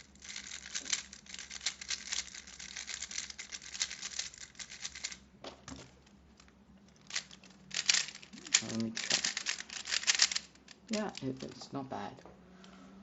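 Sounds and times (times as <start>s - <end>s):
puzzle cube clicking: 7.0s - 11.6s.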